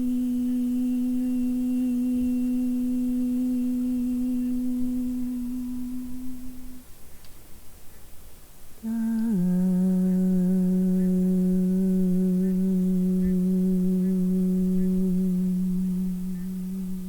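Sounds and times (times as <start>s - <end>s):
person humming held notes: 0.0s - 7.0s, 8.8s - 17.0s.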